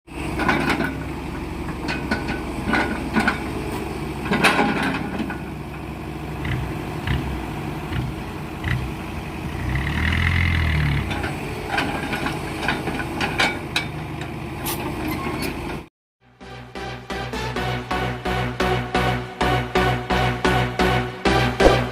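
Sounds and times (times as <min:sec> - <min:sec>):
heavy diesel machinery running: 0:00.1 - 0:21.9
electronic music: 0:16.3 - 0:21.9
sharp knocks and clanks: 0:21.5 - 0:21.9.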